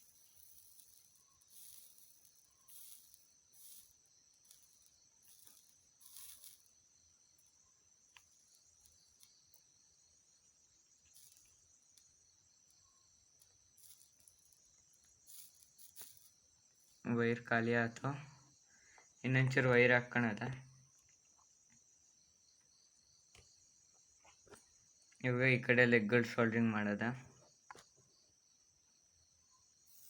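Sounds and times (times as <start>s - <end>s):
flux sizzling under soldering iron: 0.0s - 17.1s, 29.6s - 30.0s
faint high-pitched whine: 0.0s - 30.0s.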